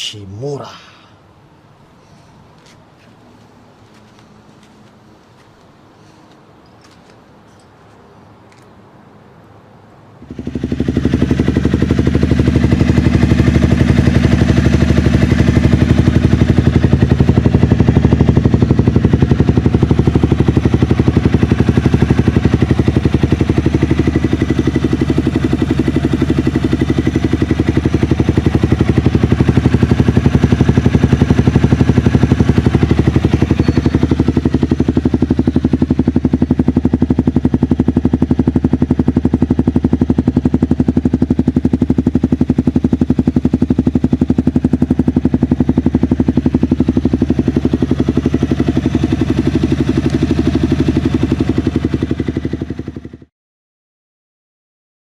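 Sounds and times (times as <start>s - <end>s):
motorcycle engine idling: 10.2s - 53.3s.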